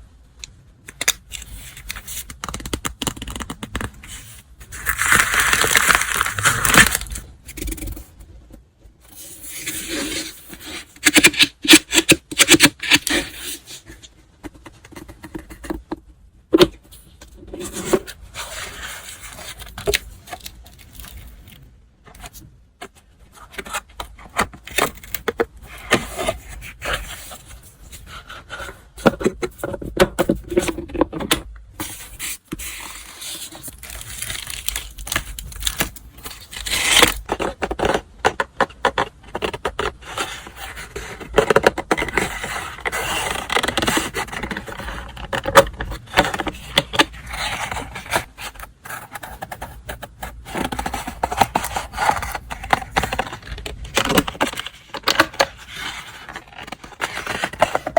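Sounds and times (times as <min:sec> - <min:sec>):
paper and wrapping rustling: 0:04.0 - 0:07.9, 0:17.6 - 0:21.7, 0:31.8 - 0:37.5, 0:40.0 - 0:57.9.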